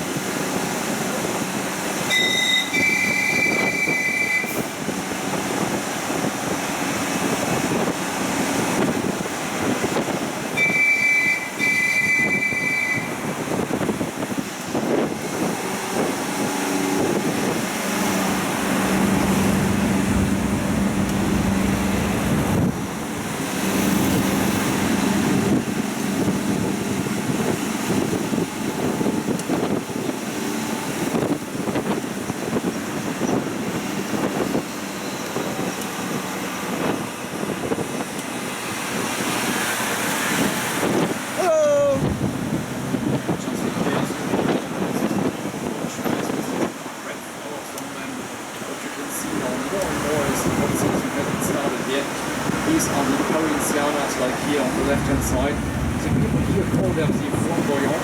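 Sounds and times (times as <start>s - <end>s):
road noise: 0.0s - 58.0s
wind buffeting microphone: 2.7s - 10.8s, 11.5s - 47.0s, 48.2s - 58.0s
engine humming: 15.8s - 29.8s, 49.0s - 58.0s.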